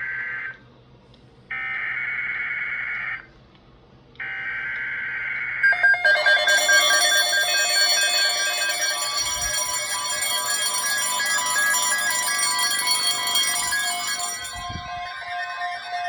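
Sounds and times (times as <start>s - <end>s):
buzzing digital data tones: 5.6s - 16.0s
pulsing electronic alert tone: 5.6s - 16.0s.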